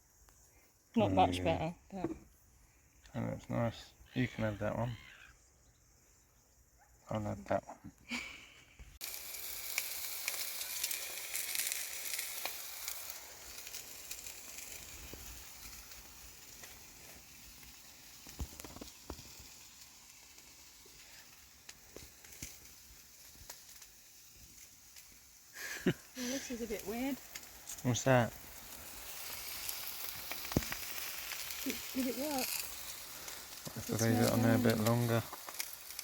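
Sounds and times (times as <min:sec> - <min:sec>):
food sizzling and crackling: 0:08.1 - 0:36.0.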